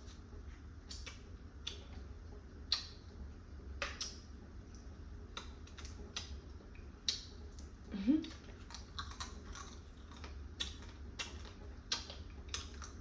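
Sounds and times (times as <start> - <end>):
crab shell cracking while eating: 8.3 - 13.0.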